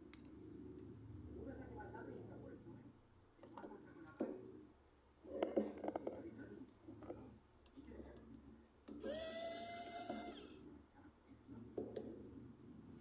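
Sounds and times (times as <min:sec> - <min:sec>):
small motor whirring: 0:09.0 - 0:10.6.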